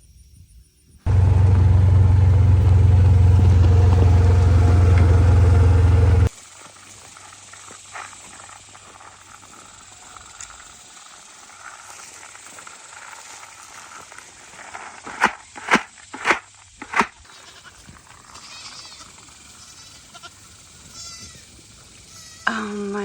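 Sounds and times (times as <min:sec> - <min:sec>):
livestock bleating: 0:17.3 - 0:21.4, 0:22.1 - 0:22.7.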